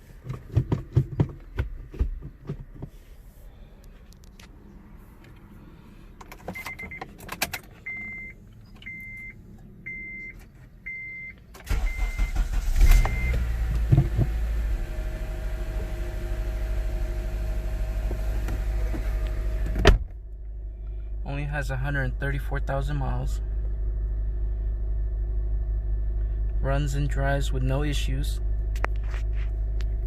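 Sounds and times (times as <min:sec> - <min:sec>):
car engine cranking and idling: 0:00.0 - 0:30.0
dashboard warning chime beeping: 0:06.6 - 0:07.1, 0:07.8 - 0:13.5.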